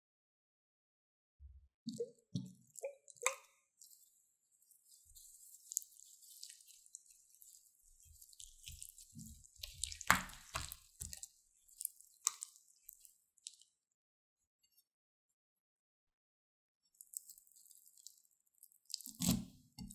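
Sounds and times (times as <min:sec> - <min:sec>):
slime squished with wet pops: 0:09.6 - 0:11.3.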